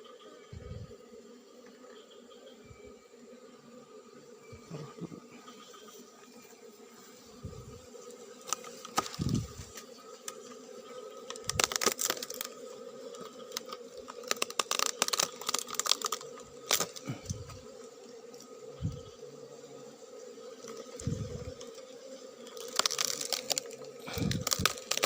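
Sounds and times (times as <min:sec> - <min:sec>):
honeybees buzzing: 0:00.0 - 0:25.0
honeycomb crackling and tearing: 0:08.4 - 0:10.4, 0:11.2 - 0:17.7, 0:20.6 - 0:25.0.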